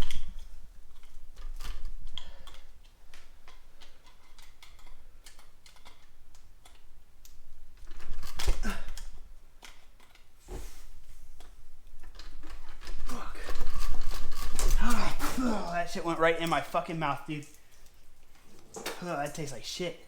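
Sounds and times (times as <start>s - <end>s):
tools and metal parts clinking: 0.0s - 6.9s
metal parts clattering: 12.0s - 16.6s.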